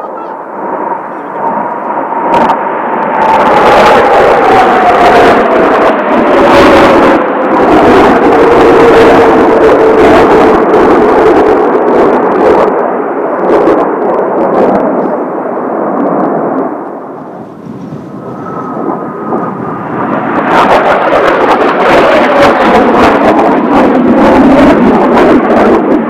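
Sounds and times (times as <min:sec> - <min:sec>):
jet aircraft flying past: 0:00.0 - 0:26.0
faint high whine: 0:17.0 - 0:19.9.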